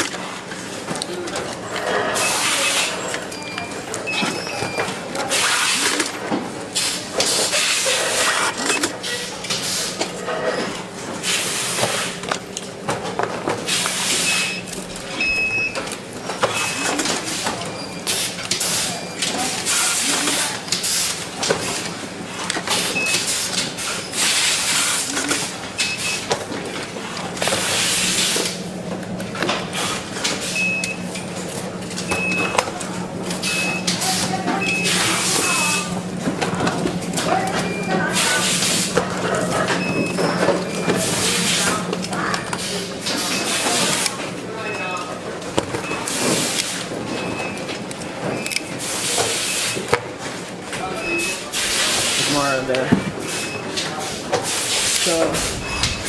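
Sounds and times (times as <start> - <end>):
machinery low hum: 54.2 - 56.0.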